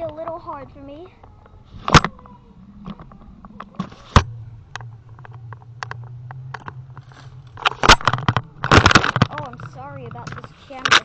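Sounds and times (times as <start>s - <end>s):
low steady hum: 0.0s - 11.0s.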